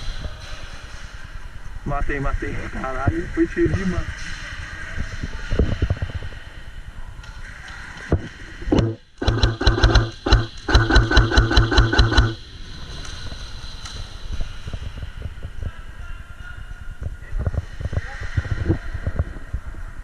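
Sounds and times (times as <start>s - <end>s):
sharp knock: 8.7s - 12.4s
airsoft gun firing: 8.8s - 12.4s.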